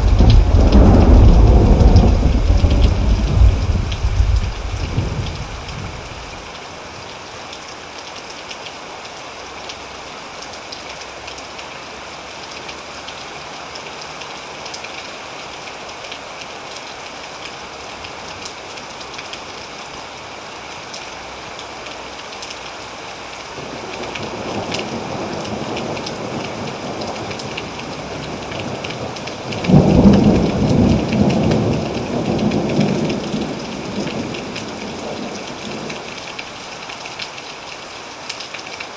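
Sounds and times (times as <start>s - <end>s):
thunderclap: 0.0s - 6.3s
thunder rumbling: 0.0s - 6.4s, 27.9s - 36.0s
steady rain falling: 0.0s - 38.9s.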